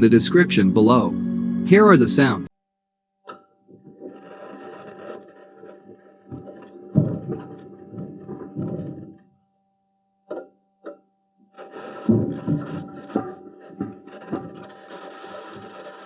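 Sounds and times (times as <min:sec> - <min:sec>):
steady hum: 0:00.0 - 0:02.5
clanking and scraping: 0:03.3 - 0:09.3, 0:11.6 - 0:16.0.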